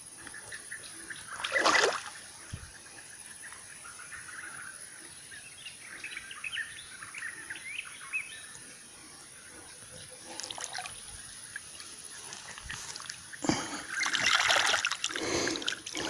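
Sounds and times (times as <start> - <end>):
small songbirds chirping: 0.0 - 16.0
water splashing: 1.3 - 2.3, 10.3 - 16.0.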